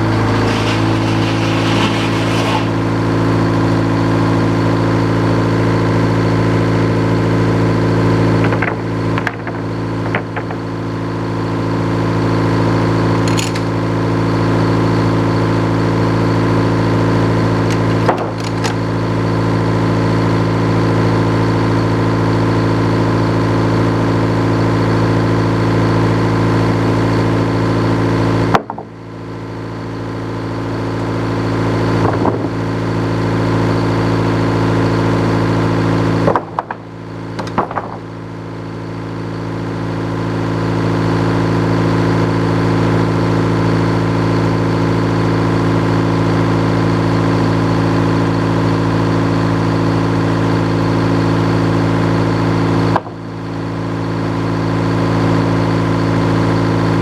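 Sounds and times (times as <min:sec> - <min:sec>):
sawmill engine running: 0:00.0 - 0:07.0, 0:11.3 - 0:28.2.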